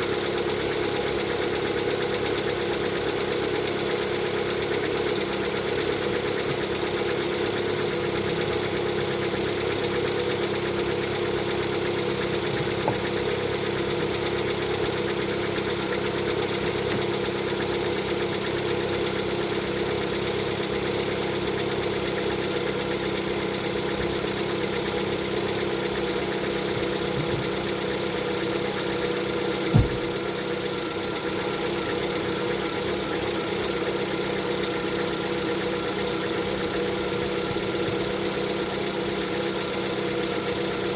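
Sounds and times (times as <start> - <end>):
car engine idling with knock: 0.0 - 40.9
sharp thump: 29.7 - 30.3.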